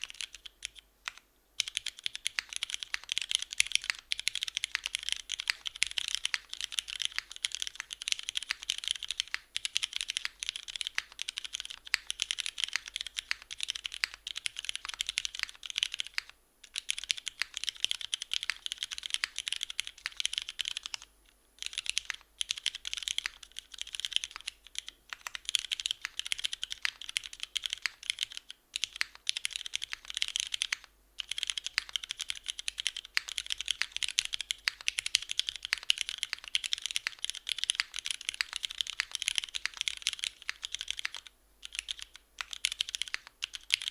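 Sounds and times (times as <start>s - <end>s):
fast mechanical keyboard typing: 0.0s - 43.9s.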